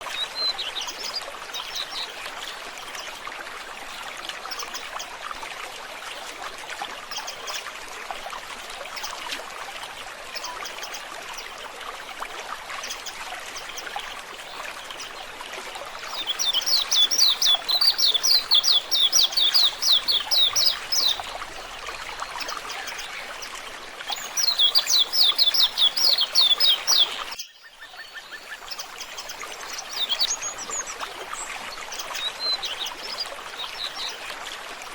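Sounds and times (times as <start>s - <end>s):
running water trickling: 0.0s - 34.9s
birds chirping: 16.1s - 23.4s, 24.1s - 34.2s.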